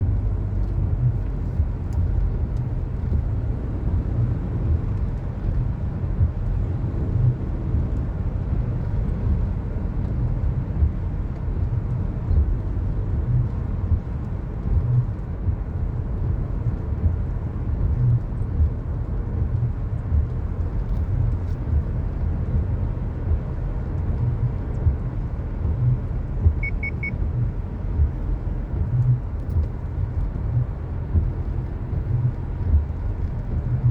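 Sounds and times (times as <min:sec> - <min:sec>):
car road and engine rumble: 0:00.0 - 0:33.9
low thumps: 0:24.2 - 0:33.9
quick triple beep: 0:26.6 - 0:27.2.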